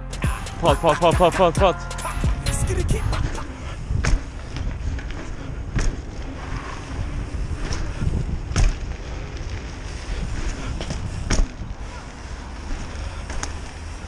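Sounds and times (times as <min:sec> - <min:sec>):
wind on microphone: 0:02.6 - 0:13.6
bike tyres rolling rumble: 0:03.4 - 0:14.0
bike knocks and rattles: 0:03.8 - 0:14.0.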